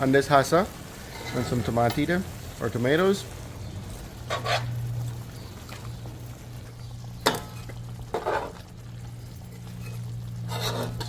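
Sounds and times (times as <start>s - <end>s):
curry cooking in a pot: 0.0s - 11.0s
stirring scrapes: 1.0s - 1.7s, 4.2s - 4.8s, 9.4s - 11.0s.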